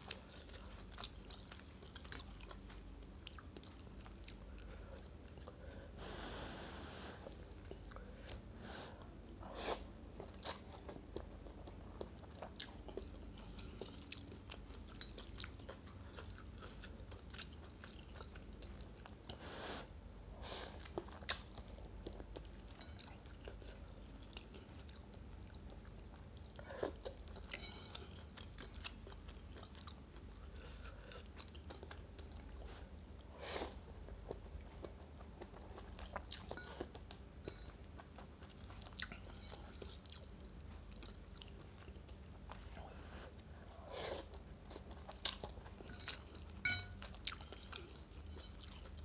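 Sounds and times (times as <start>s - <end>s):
chewing noodles: 0.0s - 5.6s, 20.7s - 33.0s, 33.6s - 49.0s
low steady hum: 0.0s - 49.0s.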